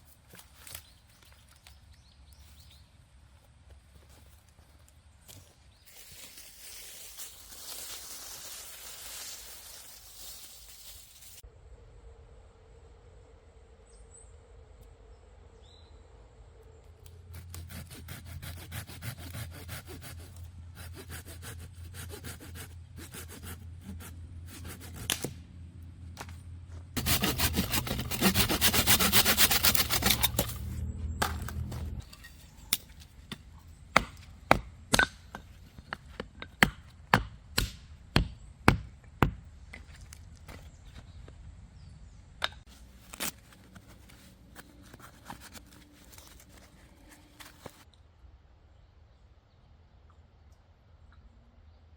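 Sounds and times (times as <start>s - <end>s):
hand saw cutting firewood: 17.3s - 25.4s, 27.0s - 31.4s.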